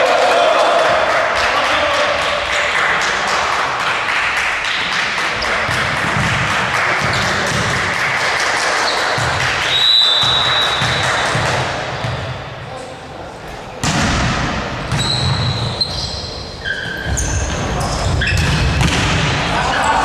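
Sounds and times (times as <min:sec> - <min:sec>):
indoor hall noise: 0:00.0 - 0:20.0
basketball bouncing: 0:05.6 - 0:08.0, 0:09.2 - 0:12.4, 0:13.8 - 0:16.0, 0:17.0 - 0:19.4.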